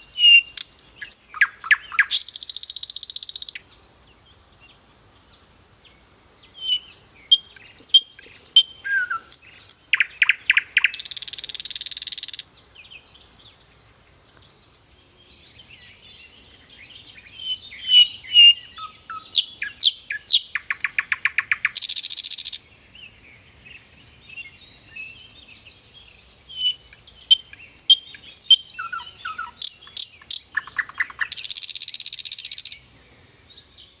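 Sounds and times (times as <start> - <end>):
songbird chirping: 0.0 - 34.0.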